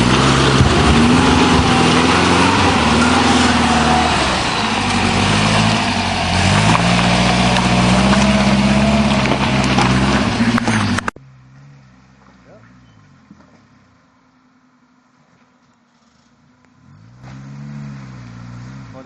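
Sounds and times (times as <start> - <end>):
off-road vehicle engine running hard: 0.0 - 14.0.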